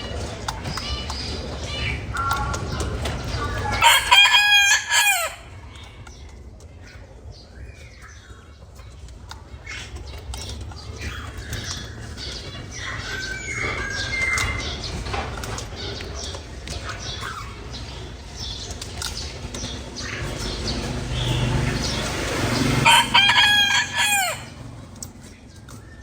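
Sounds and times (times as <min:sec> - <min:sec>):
loud bird call: 0:03.5 - 0:05.6, 0:20.0 - 0:24.9.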